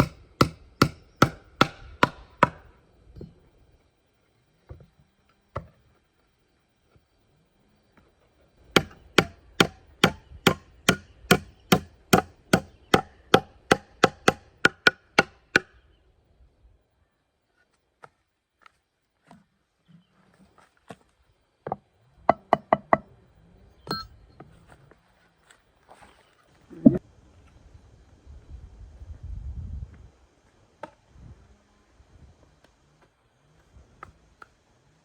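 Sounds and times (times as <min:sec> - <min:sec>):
hand tool striking wood: 0:00.0 - 0:03.3, 0:08.7 - 0:15.7.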